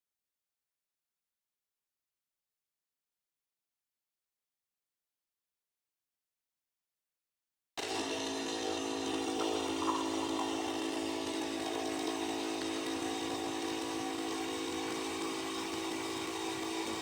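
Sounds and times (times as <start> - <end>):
espresso machine pump buzzing: 7.8 - 17.0.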